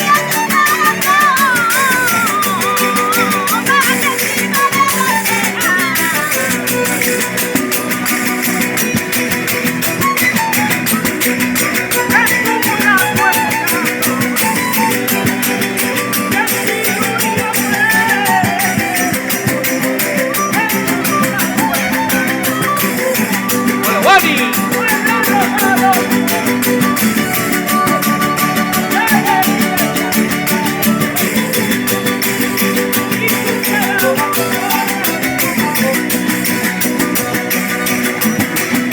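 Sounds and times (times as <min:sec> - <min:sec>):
fast percussion beat: 0:00.0 - 0:38.9
guitars strumming: 0:00.0 - 0:38.9
wavering melody: 0:09.2 - 0:38.1.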